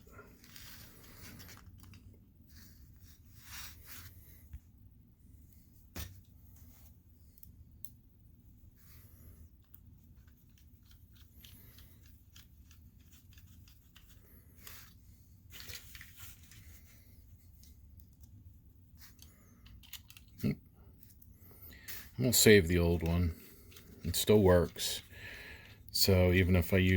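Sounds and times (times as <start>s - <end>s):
faint clicks of small parts: 0.4s - 2.2s, 7.3s - 8.0s, 9.4s - 26.0s.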